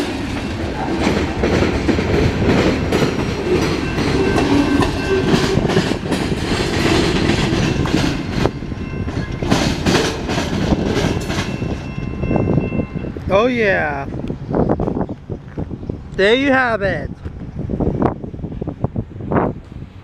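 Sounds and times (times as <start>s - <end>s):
train wheels clicking over rail joints: 0.0s - 13.3s
train rumble: 0.0s - 20.0s.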